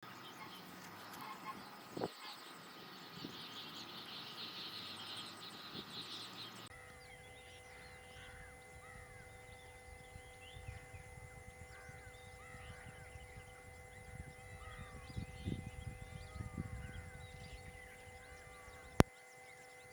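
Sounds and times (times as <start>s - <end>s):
bird calls: 0.0s - 19.9s
faint steady hum: 0.0s - 19.9s
insects buzzing: 0.0s - 19.9s.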